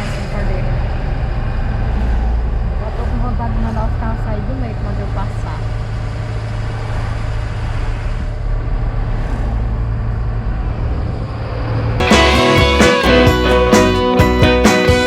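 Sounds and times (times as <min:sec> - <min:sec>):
guitar song: 0:12.0 - 0:15.0.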